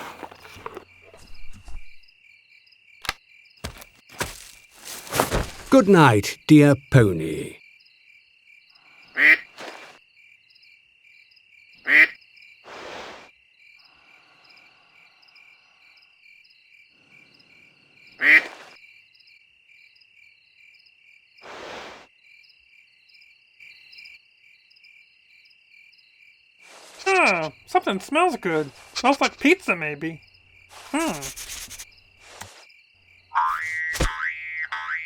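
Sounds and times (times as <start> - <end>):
soft breathy puffs: 30.7 - 32.6
frog croaks: 33.3 - 35.0.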